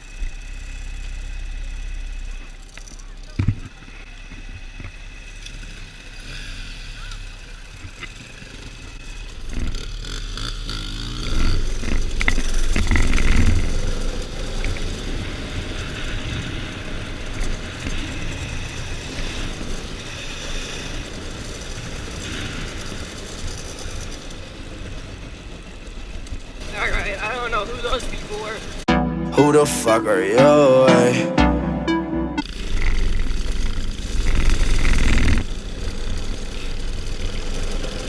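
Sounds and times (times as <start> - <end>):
dirt bike engine revving: 3.8 - 24.0, 32.4 - 38.0.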